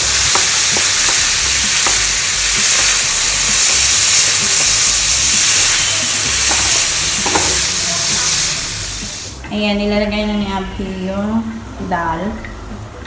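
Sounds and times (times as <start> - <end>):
hot oil sizzling in a pan: 0.0 - 9.4.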